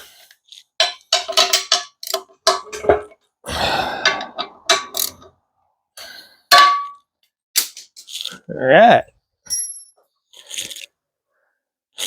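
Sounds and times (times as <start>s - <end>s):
metal tools clanking: 0.8s - 3.2s, 4.0s - 5.3s.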